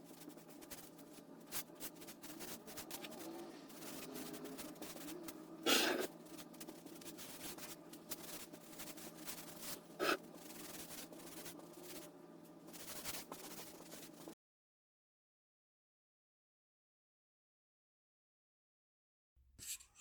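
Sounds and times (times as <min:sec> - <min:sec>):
faint rubbing and scraping: 0:00.0 - 0:14.4.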